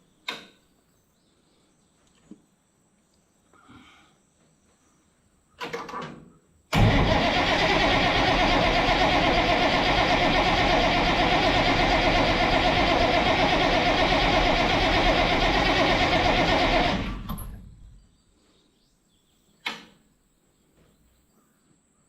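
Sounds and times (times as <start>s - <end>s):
tractor engine running: 6.8s - 18.0s.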